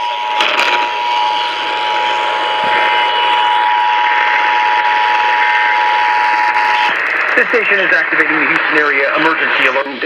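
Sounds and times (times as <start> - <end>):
two-tone alert signal: 0.0 - 7.7
radio static hiss: 0.4 - 10.0.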